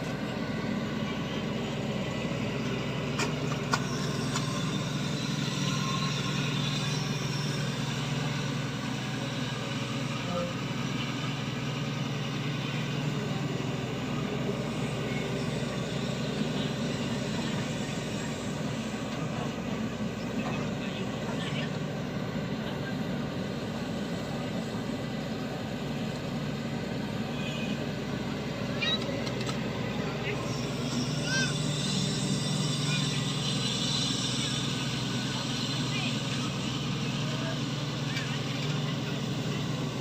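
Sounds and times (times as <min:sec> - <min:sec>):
excavator diesel engine running: 0:00.0 - 0:40.0.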